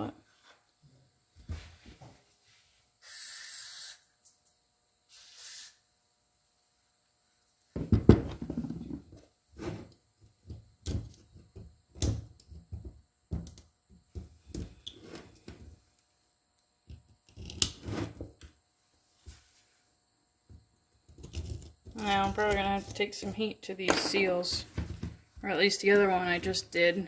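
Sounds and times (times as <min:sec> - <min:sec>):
hand tools tapping metal parts: 0:21.3 - 0:24.6.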